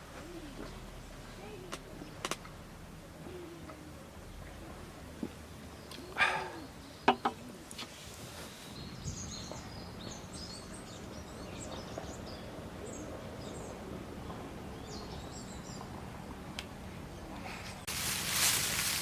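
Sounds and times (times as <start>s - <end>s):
low background rumble: 0.0s - 7.8s
small birds chirping: 3.2s - 17.9s.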